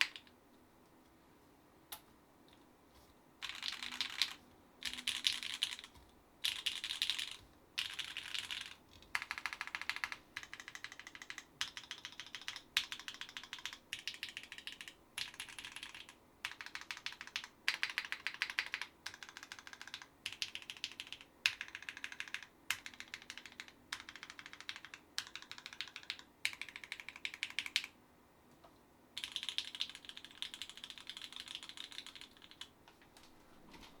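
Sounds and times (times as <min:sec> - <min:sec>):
mechanical keyboard typing: 0:00.0 - 0:00.3, 0:03.4 - 0:27.9, 0:29.2 - 0:32.7.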